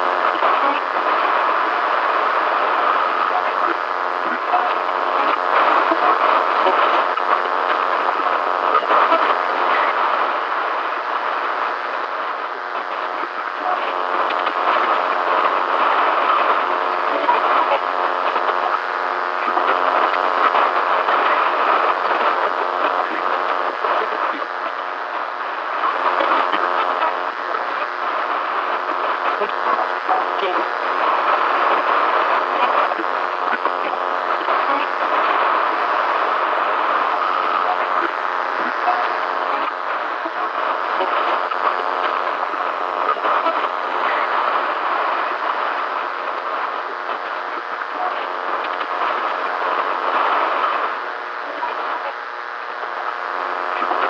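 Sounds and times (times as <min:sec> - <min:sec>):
garbled radio voice: 0:00.0 - 0:54.0
radio static and crackle: 0:00.0 - 0:54.0.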